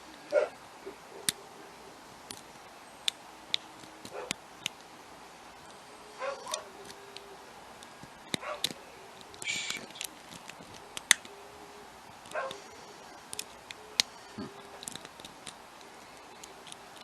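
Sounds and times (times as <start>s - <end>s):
small metallic clicks: 6.4s - 11.3s, 12.2s - 17.0s
loud sharp snaps: 8.3s - 10.1s
short faint whines: 9.0s - 10.0s.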